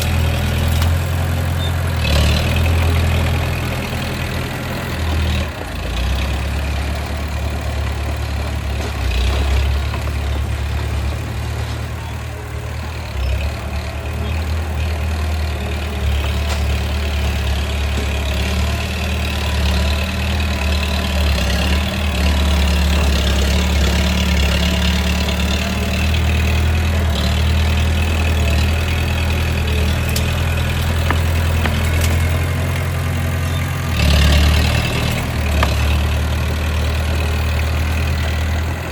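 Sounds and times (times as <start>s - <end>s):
bulldozer diesel engine droning: 0.0s - 38.9s.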